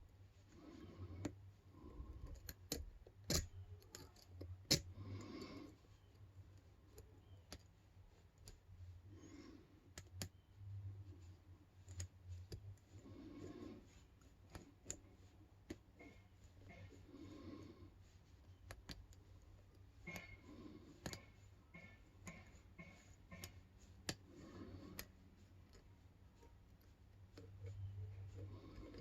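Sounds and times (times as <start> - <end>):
lock pick clicking in padlock: 2.2 - 4.9.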